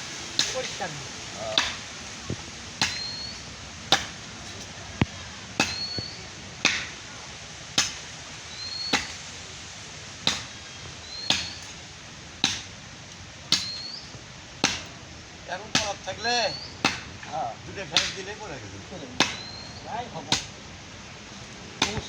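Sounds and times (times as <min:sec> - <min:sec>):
blade chopping into branch: 0:00.4 - 0:00.7, 0:01.5 - 0:01.9, 0:02.8 - 0:03.3, 0:03.9 - 0:04.3, 0:05.0 - 0:07.0, 0:07.8 - 0:08.1, 0:08.8 - 0:09.3, 0:10.2 - 0:10.6, 0:11.2 - 0:11.8, 0:12.4 - 0:12.8, 0:13.5 - 0:14.0, 0:14.6 - 0:15.0, 0:15.7 - 0:18.3, 0:19.2 - 0:19.7, 0:20.3 - 0:20.6, 0:21.8 - 0:22.0.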